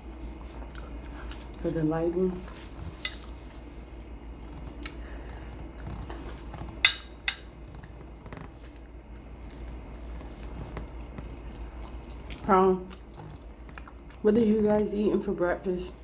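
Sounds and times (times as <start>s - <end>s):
low steady hum: 0.0s - 16.0s
cutlery clinking against dish: 6.8s - 7.5s.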